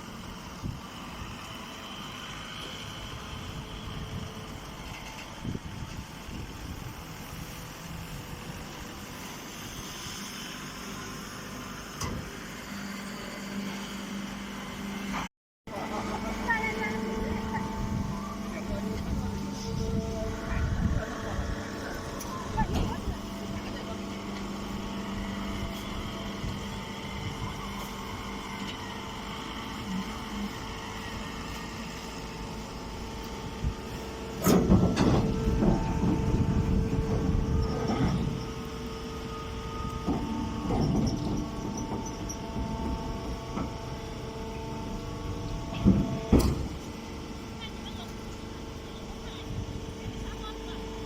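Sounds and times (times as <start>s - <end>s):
low hum: 15.8s - 50.4s.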